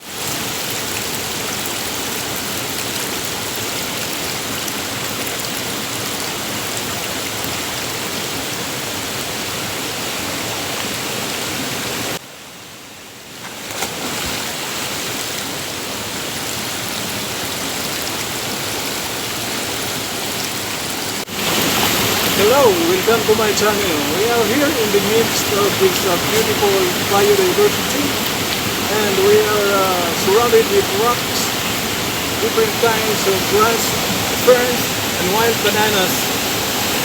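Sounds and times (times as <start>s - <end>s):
river water rushing: 13.6s - 37.0s.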